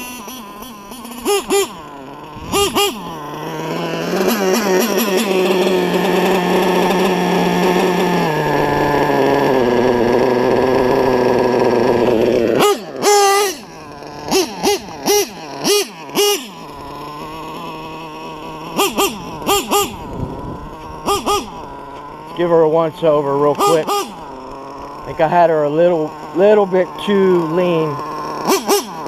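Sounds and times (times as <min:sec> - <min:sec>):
model engine whining and revving: 0:00.0 - 0:29.0.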